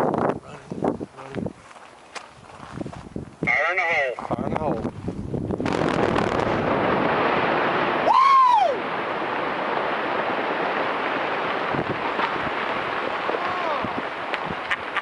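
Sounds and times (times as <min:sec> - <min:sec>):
quarry blast roar: 0:05.6 - 0:14.3
short rising and falling whoop: 0:08.0 - 0:08.9.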